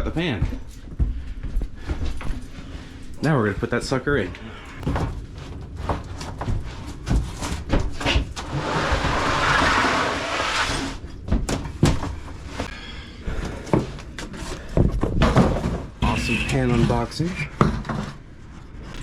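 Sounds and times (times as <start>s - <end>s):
rasping sliding noise: 8.4s - 11.0s
knocks and clunks: 14.7s - 18.2s.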